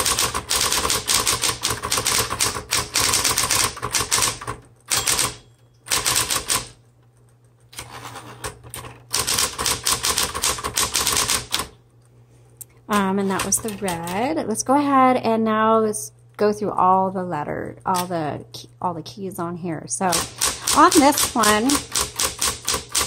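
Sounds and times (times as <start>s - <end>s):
electric typewriter key strikes: 0.0s - 6.8s, 8.7s - 11.8s, 20.1s - 23.0s
typewriter motor hum: 0.0s - 11.8s, 20.0s - 23.0s.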